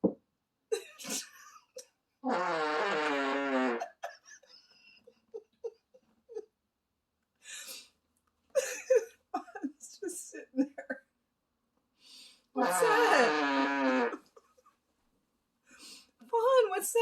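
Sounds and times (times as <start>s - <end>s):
buzzing fart sound effect: 2.2s - 4.0s, 12.6s - 14.2s.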